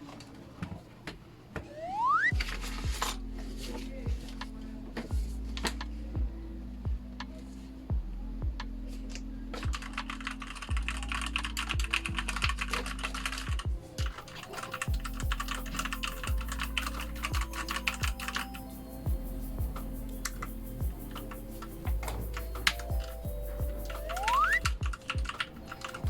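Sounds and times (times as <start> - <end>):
rapid mechanical keyboard typing: 9.6 - 26.0.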